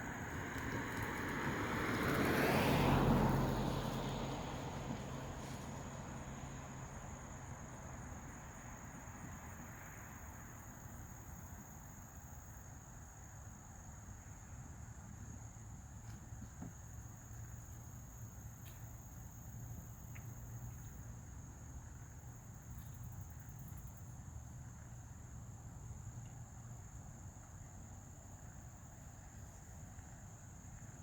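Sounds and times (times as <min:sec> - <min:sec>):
vehicle passing by: 0:00.2 - 0:08.2.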